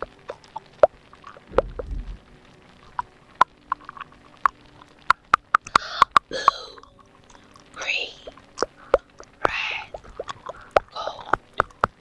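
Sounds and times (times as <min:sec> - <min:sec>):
wet lip and tongue clicks: 0:00.0 - 0:01.9, 0:02.9 - 0:12.0
brief low rumble: 0:01.5 - 0:02.2.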